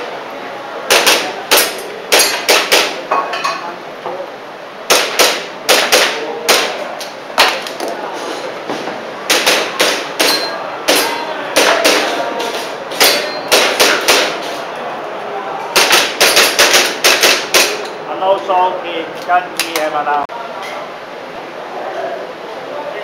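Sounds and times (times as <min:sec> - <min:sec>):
airsoft pistol shots: 0:04.9 - 0:06.8.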